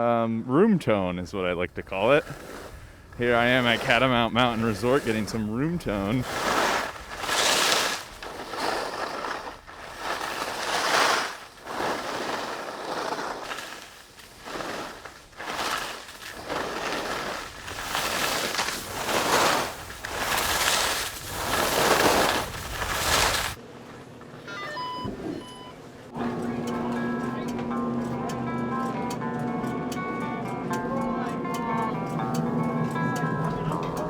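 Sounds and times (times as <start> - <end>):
skis swishing on snow: 1.2 - 23.6.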